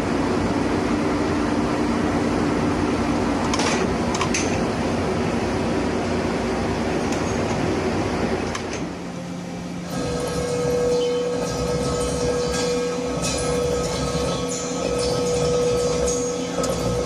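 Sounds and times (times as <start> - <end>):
steady humming tone: 0.0 - 17.0
machine tool cutting metal: 9.9 - 17.0.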